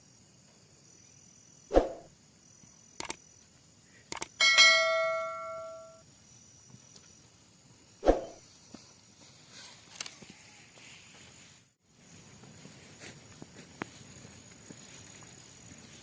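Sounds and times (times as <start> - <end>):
ringing metallic strike: 4.4 - 6.0.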